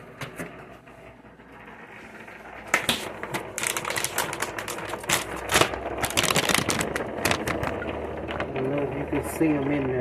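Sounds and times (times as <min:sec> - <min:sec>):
plastic packaging crinkling: 0:02.8 - 0:07.8.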